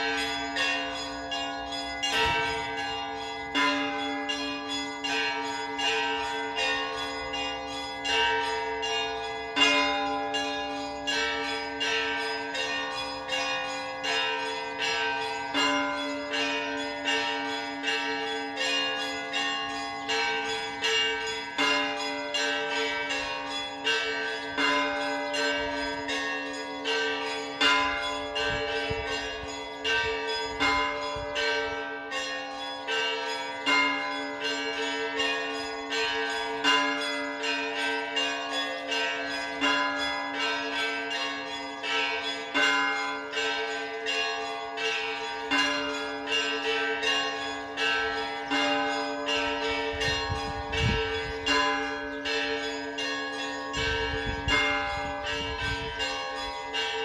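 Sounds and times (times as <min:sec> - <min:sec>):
middle bells ringing: 0:00.0 - 0:57.0.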